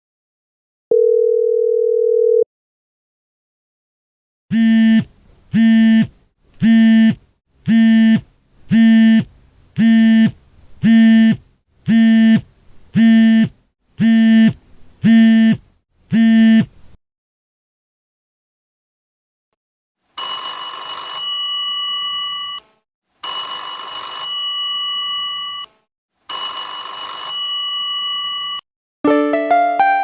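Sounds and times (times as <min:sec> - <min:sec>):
telephone busy signal: 0:00.9 - 0:02.4.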